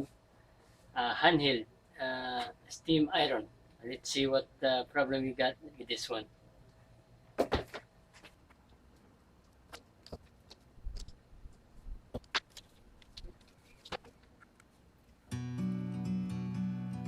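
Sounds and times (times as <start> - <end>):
acoustic guitar music: 15.3 - 17.0.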